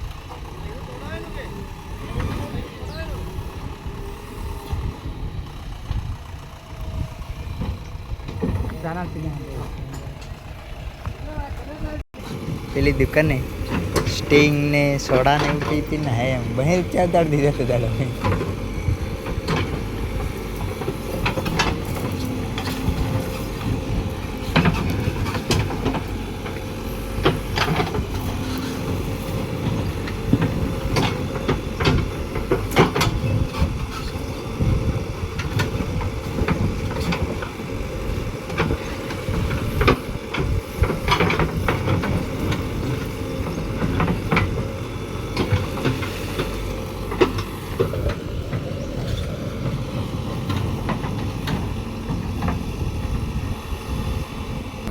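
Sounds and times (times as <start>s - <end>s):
diesel engine running: 0.0s - 54.9s
metal clanks and knocks: 38.5s - 44.7s.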